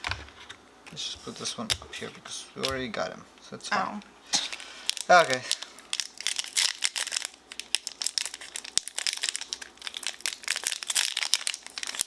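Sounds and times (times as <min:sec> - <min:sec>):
foil wrapper crinkling: 0:04.4 - 0:12.0.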